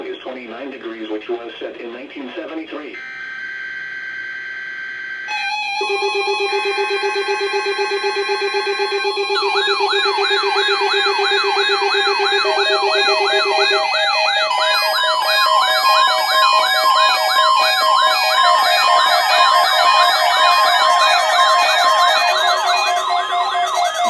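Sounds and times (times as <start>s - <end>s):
siren-like wails: 4.5s - 24.0s
electronic beeping tones: 5.3s - 24.0s.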